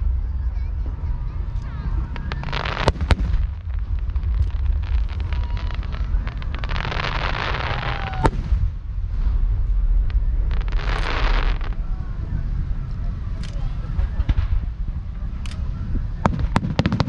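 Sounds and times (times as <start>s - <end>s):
loud firework report: 0.0s - 17.0s
fireworks cracks and pops: 1.4s - 8.8s, 9.6s - 11.8s, 15.4s - 17.0s
hissing crackling shells: 2.0s - 8.4s, 9.6s - 11.8s.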